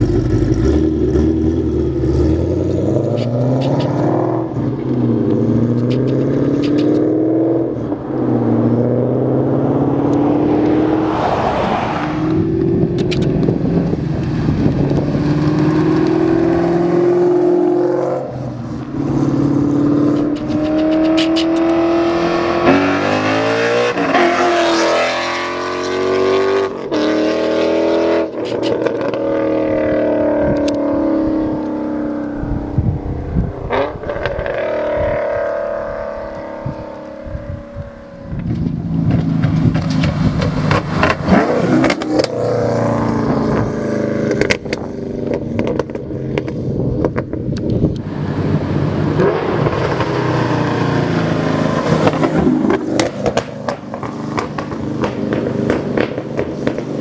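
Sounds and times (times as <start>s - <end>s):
car engine revving: 0.0s - 57.0s
rush of noise: 7.8s - 15.5s
exhaust crackling pops: 38.3s - 42.4s, 44.3s - 48.1s, 51.8s - 57.0s.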